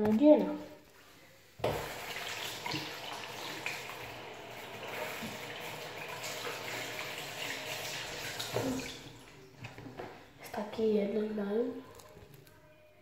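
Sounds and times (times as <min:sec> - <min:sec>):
tap water running into sink: 0:01.6 - 0:09.9.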